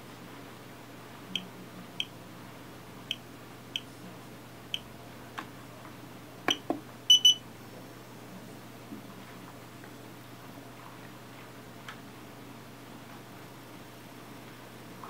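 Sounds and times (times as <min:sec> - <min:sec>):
short high piezo beeps: 0:07.1 - 0:07.4.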